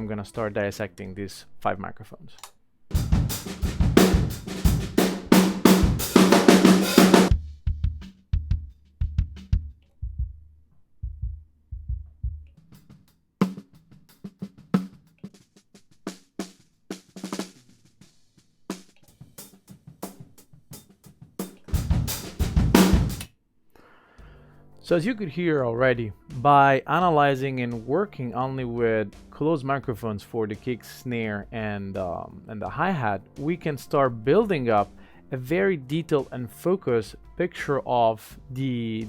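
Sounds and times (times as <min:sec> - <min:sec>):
drum kit groove: 0:02.9 - 0:10.4, 0:11.0 - 0:23.3, 0:26.2 - 0:28.0, 0:28.8 - 0:29.4, 0:31.6 - 0:33.8, 0:37.2 - 0:39.0
kick drum thumping: 0:02.9 - 0:10.4, 0:11.0 - 0:12.5, 0:21.7 - 0:23.2
snare drum hits: 0:03.0 - 0:07.4, 0:21.6 - 0:23.3.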